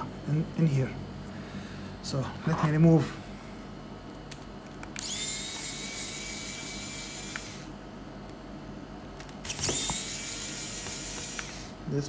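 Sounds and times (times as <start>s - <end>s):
electric hand tool motor whine: 5.0s - 7.8s, 9.4s - 11.8s.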